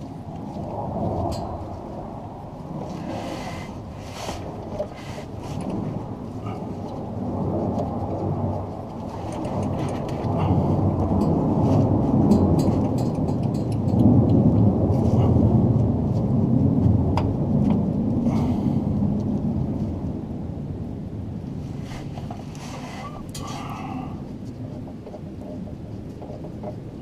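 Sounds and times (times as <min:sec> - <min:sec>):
jet aircraft rumble overhead: 0:00.0 - 0:27.0
light clicks and taps: 0:12.3 - 0:14.5.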